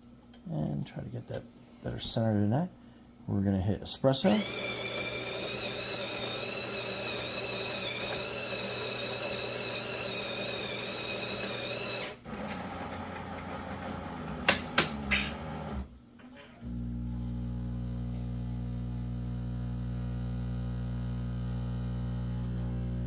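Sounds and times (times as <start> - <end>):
espresso machine motor whine: 4.2 - 15.9, 16.6 - 23.0
steady low buzz: 16.6 - 23.0.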